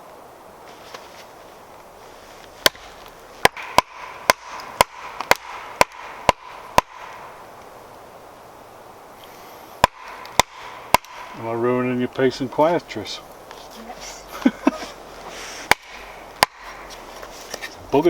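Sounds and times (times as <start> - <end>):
axe chopping a log: 2.6 - 7.3, 9.8 - 11.4, 15.7 - 17.0.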